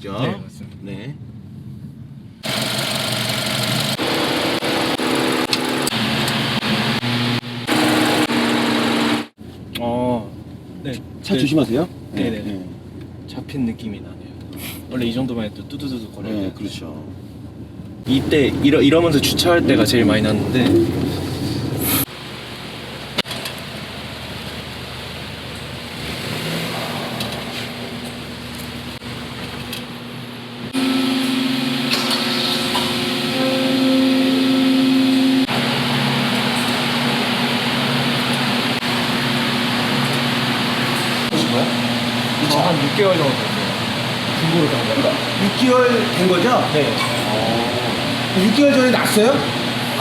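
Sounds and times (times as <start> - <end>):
car engine running: 2.4 - 9.4, 17.5 - 50.0
machine buzzing whine: 2.4 - 9.4, 26.7 - 45.2.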